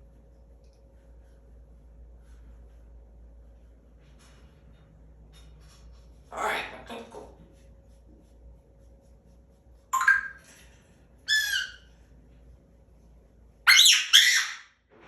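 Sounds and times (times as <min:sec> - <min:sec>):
parrot whistling loudly: 0:11.3 - 0:11.9, 0:13.7 - 0:14.7.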